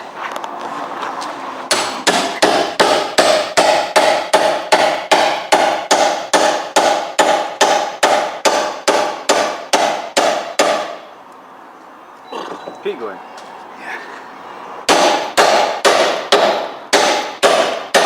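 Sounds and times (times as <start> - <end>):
hammer striking steel: 1.7 - 11.0, 14.9 - 18.0.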